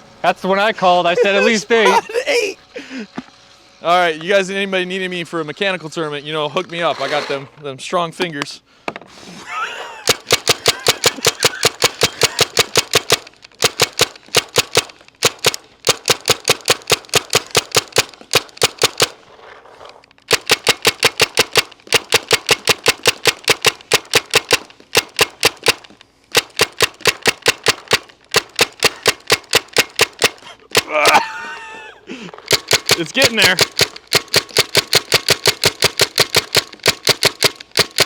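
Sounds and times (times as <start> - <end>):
paintball marker firing shots: 10.1 - 19.2, 20.3 - 31.1, 32.4 - 38.0.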